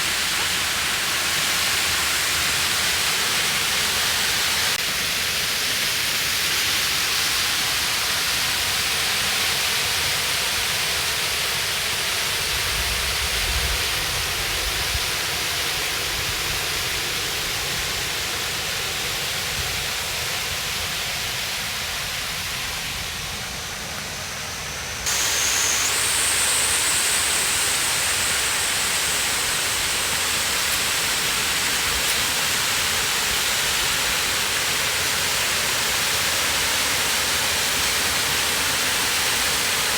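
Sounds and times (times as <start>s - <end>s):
thin high whine: 21.6s - 39.9s
waterfall rushing: 23.6s - 39.9s.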